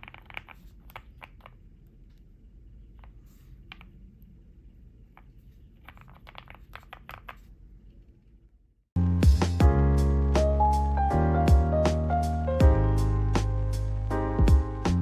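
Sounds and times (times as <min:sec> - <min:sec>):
loud music: 0:09.0 - 0:15.0.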